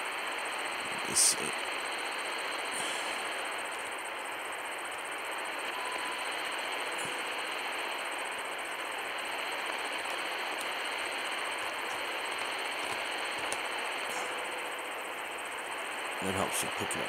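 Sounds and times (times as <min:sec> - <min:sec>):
radio static hiss: 0:00.0 - 0:17.0
faint radio whistle: 0:05.5 - 0:07.3.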